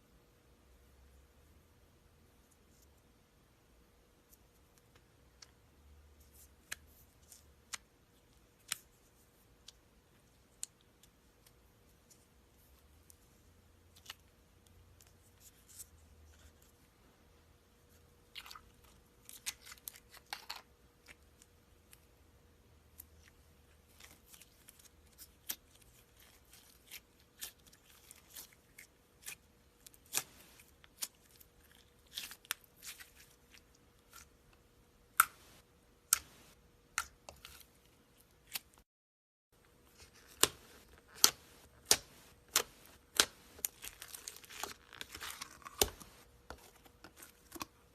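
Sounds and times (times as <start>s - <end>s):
faint steady hum: 0.0s - 38.8s, 39.6s - 47.9s
slime squelching by hand: 39.9s - 47.8s.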